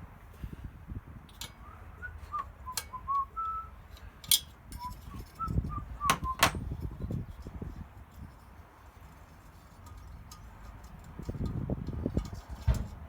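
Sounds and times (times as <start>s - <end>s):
person whistling a tune: 1.6s - 3.8s, 4.8s - 6.5s
metal tools clicking: 4.2s - 5.4s.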